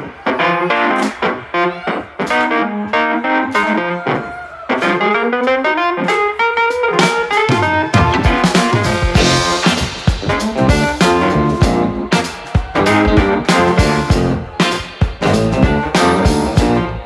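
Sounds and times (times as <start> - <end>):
guitar with pitch bends: 0.0 - 17.0
live band playing soul-blues: 4.8 - 17.0
drums: 6.0 - 17.0.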